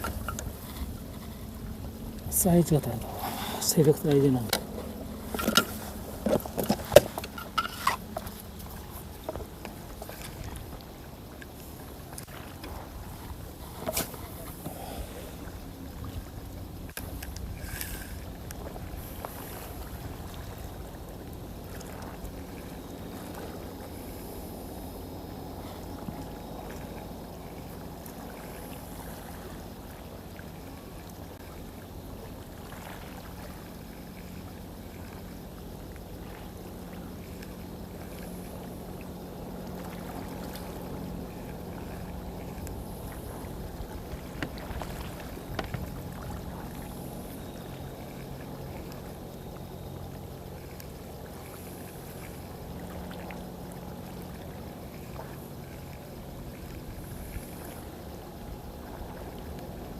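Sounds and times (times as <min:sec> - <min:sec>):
boat engine humming: 0:00.0 - 0:59.9
water wash: 0:00.0 - 0:59.9.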